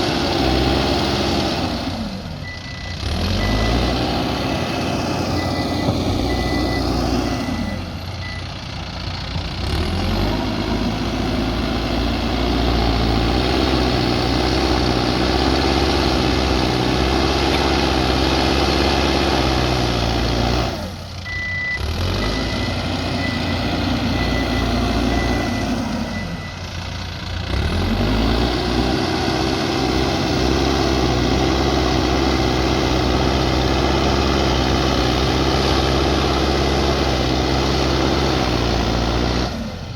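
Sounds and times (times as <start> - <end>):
diesel engine working hard: 0.0 - 39.9
reversing alarm beeping: 2.4 - 8.6, 21.2 - 26.8.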